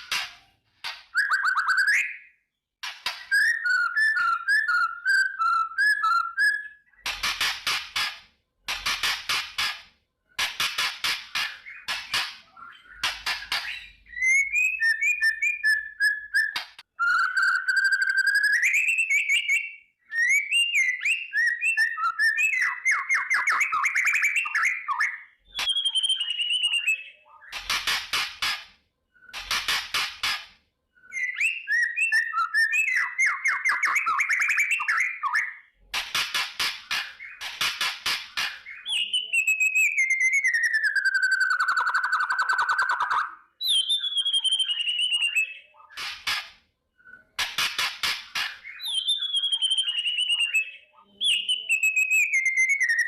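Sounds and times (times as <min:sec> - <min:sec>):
songbird singing: 0:48.6 - 0:53.0.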